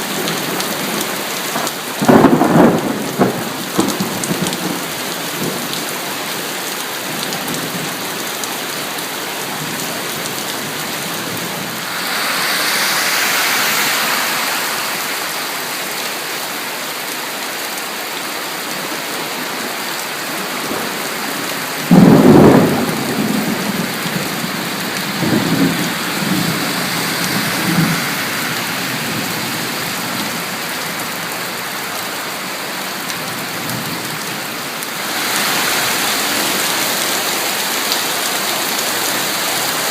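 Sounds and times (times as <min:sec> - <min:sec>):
heavy rain: 0:00.0 - 0:39.9
loud thunderclap: 0:02.0 - 0:04.8, 0:21.8 - 0:30.4
rumbling thunder: 0:02.0 - 0:05.6, 0:21.8 - 0:30.4.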